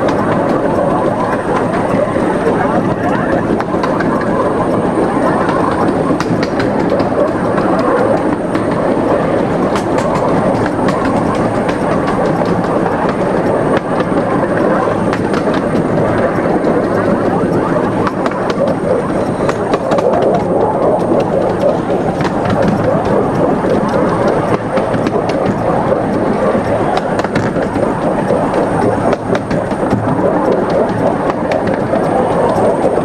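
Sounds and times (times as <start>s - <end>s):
scattered clicks: 0.0s - 33.0s
wheels rumbling on track: 0.0s - 33.0s.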